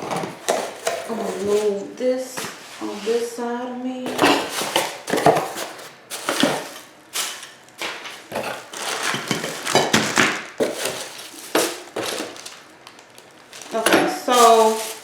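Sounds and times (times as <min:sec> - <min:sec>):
packaging rustling: 0:00.0 - 0:01.7, 0:04.1 - 0:15.0
parts scraping: 0:04.1 - 0:12.7, 0:13.5 - 0:15.0.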